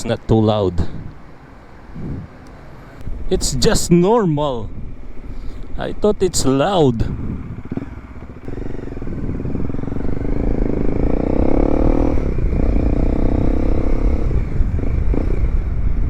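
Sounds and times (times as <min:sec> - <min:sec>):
motorcycle engine revving: 0:07.0 - 0:16.0.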